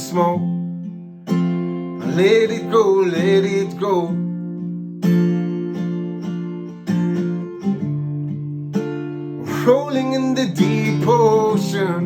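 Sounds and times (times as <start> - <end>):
acoustic guitar strumming chords: 0.0 - 12.0
person singing: 9.4 - 12.0.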